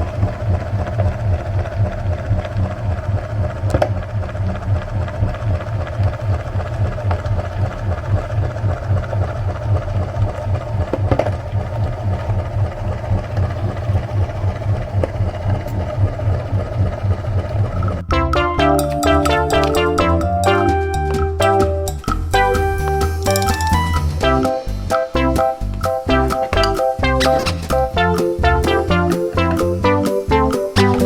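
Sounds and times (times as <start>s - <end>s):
music: 18.1s - 31.0s.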